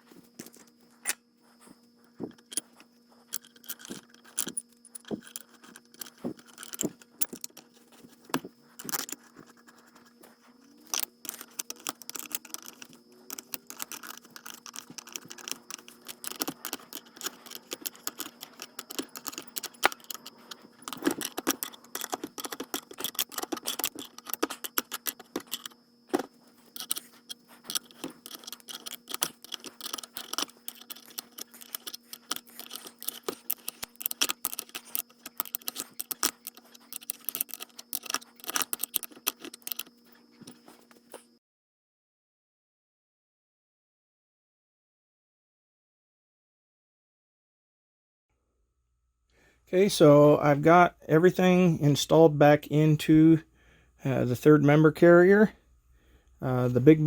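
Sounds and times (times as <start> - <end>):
steady low hum: 0.0 - 41.4
metal parts and tools clinking: 0.3 - 41.3.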